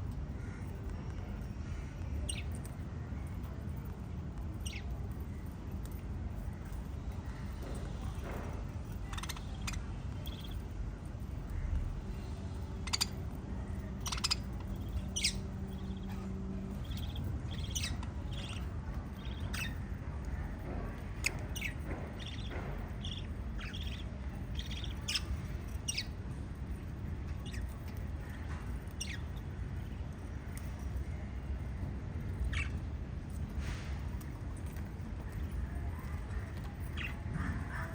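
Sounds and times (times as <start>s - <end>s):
low background rumble: 0.0s - 37.9s
parrots chirping: 4.6s - 4.9s, 9.0s - 10.6s, 12.6s - 20.4s, 21.1s - 29.5s, 32.2s - 33.5s.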